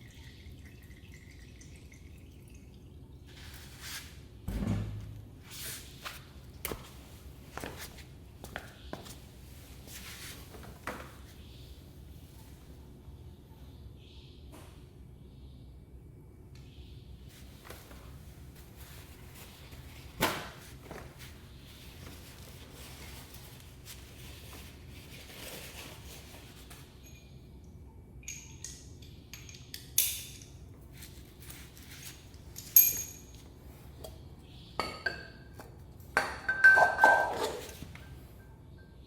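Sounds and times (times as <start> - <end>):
metal tools clinking: 32.4 - 33.5.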